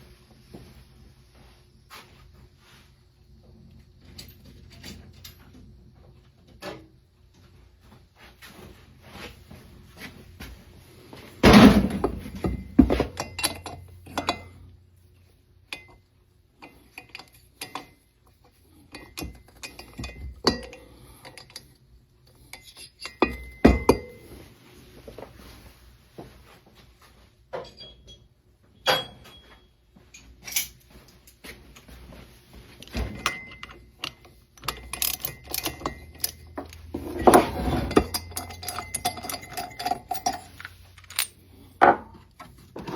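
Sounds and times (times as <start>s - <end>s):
heavy metal clunk: 11.4s - 13.2s
metal tools clinking on workbench: 11.4s - 14.7s, 22.4s - 24.2s, 27.5s - 30.8s, 32.8s - 42.1s.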